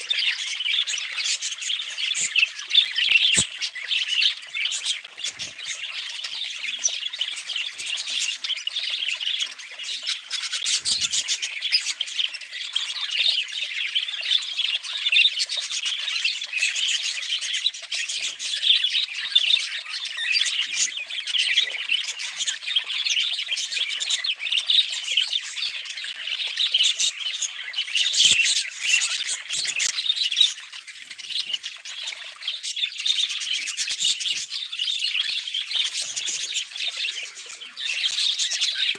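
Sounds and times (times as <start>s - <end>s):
budgerigar chirps and squawks: 0.2s - 13.2s.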